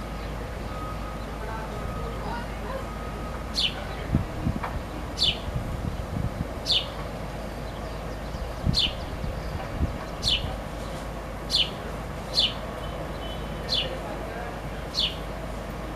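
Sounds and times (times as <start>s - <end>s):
baby sparrow chirping: 3.5s - 4.1s, 4.9s - 7.0s, 7.6s - 14.0s, 14.9s - 15.3s.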